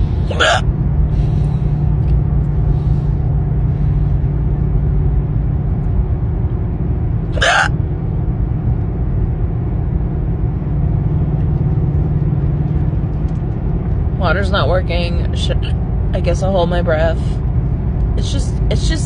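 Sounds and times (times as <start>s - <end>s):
car interior rumble and hum: 0.0s - 19.0s
woman hiccuping: 0.3s - 0.6s, 7.4s - 7.7s.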